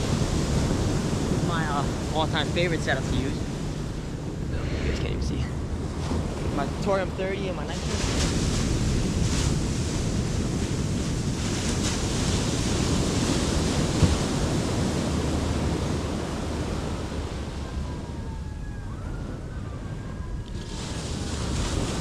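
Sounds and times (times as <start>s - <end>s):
ocean surf breaking: 0.0s - 17.8s, 20.5s - 22.0s
wind buffeting microphone: 0.0s - 22.0s
faint wailing siren: 15.0s - 22.0s.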